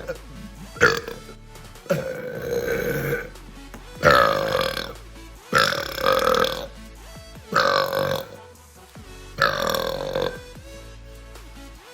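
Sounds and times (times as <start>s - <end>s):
loud drawn-out burps: 0.0s - 3.4s, 4.0s - 6.8s, 7.5s - 8.5s, 9.4s - 10.6s.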